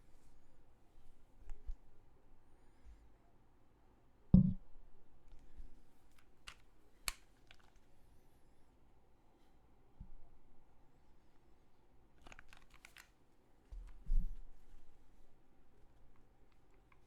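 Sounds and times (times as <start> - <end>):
mechanical keyboard key clacks: 12.2 - 13.1.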